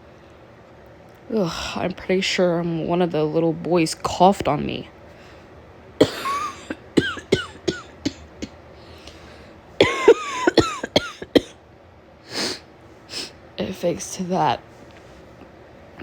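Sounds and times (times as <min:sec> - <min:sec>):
woman coughing: 0:06.0 - 0:08.5, 0:09.8 - 0:11.6.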